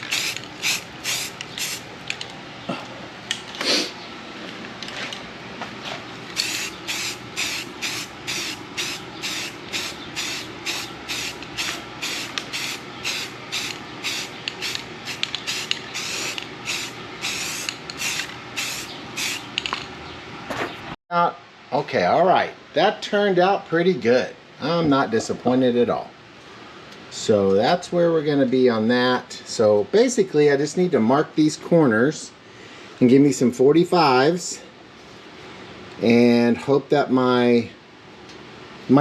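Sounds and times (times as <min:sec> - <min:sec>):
spray paint hissing from can: 0:00.0 - 0:01.9, 0:06.3 - 0:19.6.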